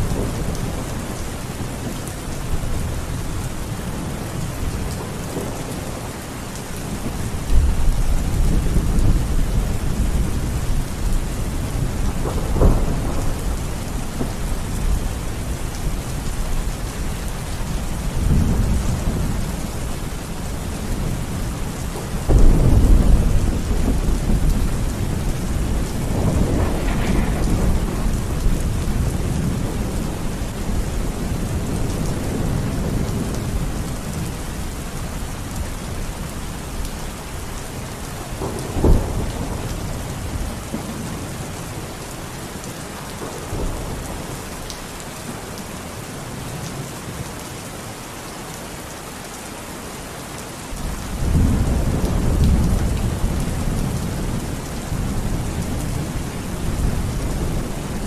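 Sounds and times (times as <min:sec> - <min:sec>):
steady rain: 0:00.0 - 0:58.0
rolling thunder: 0:07.0 - 0:17.1, 0:20.9 - 0:34.4, 0:50.8 - 0:58.0
sharp thunderclap: 0:12.0 - 0:14.4, 0:22.3 - 0:29.9.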